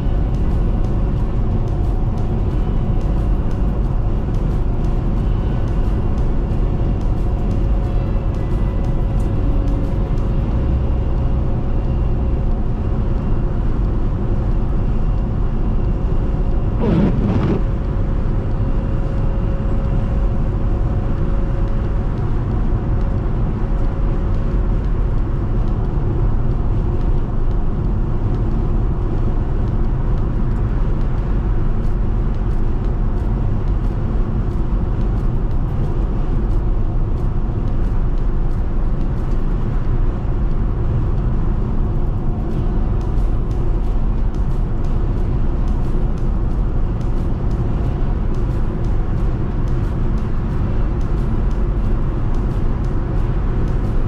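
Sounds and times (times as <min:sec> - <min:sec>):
car road rumble: 0:00.0 - 0:54.0
brief rising sound: 0:16.8 - 0:17.7.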